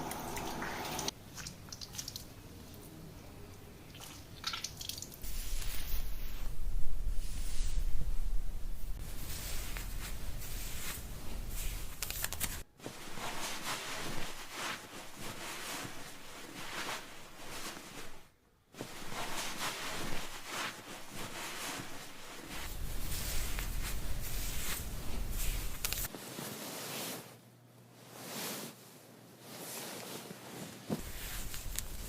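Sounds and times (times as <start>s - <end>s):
hands scratching through hair: 5.2s - 6.6s, 9.0s - 18.2s, 18.8s - 27.2s, 29.6s - 32.0s.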